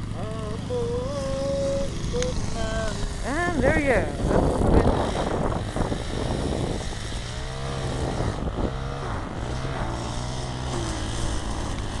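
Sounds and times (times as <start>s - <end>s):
engine running low hum: 0.0s - 12.0s
wind buffeting microphone: 0.0s - 12.0s.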